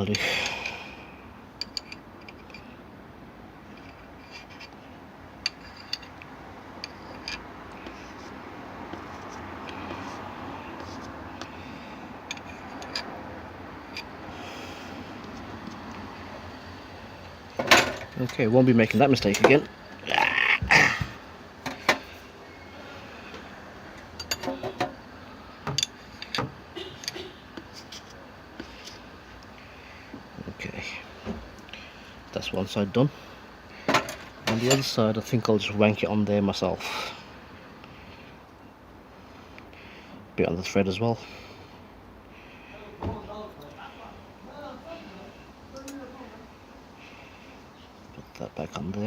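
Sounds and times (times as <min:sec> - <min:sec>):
metal parts clinking: 0:01.6 - 0:02.7, 0:05.4 - 0:07.4, 0:12.3 - 0:13.1, 0:24.1 - 0:25.0, 0:33.9 - 0:35.0.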